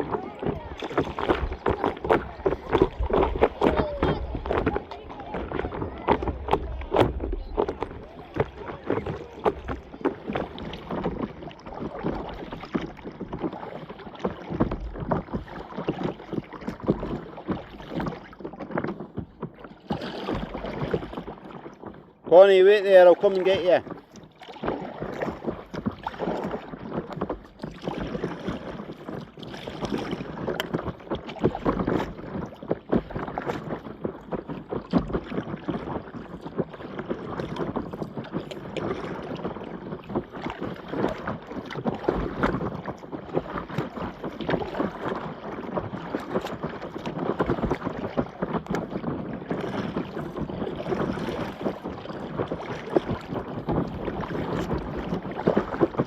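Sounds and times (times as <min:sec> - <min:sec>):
paddle strokes splashing: 0:00.0 - 0:56.0
water sloshing: 0:00.0 - 0:56.0.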